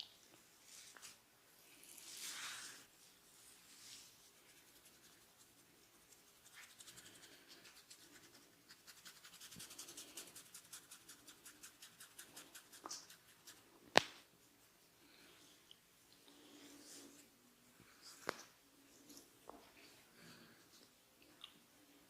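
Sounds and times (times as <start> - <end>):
fingers scratching hair and scalp: 4.5 - 13.6.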